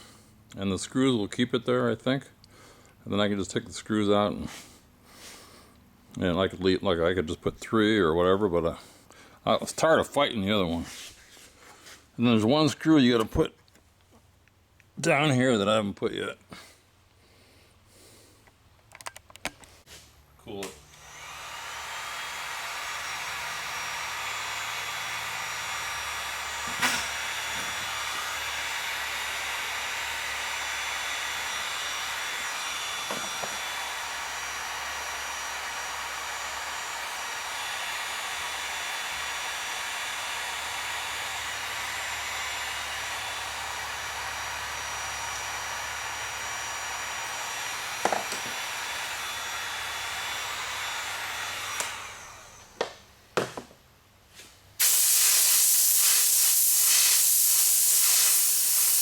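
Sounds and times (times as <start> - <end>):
heat gun blowing: 16.5 - 53.2, 54.8 - 59.0.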